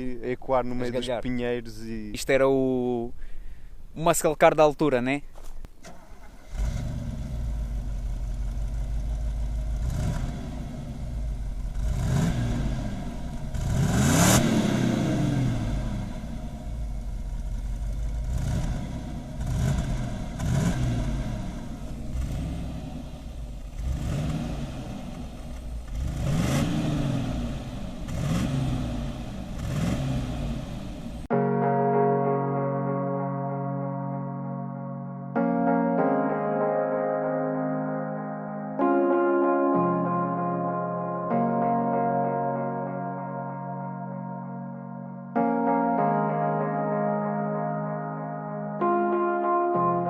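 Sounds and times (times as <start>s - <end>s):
car engine revving: 5.8s - 31.3s.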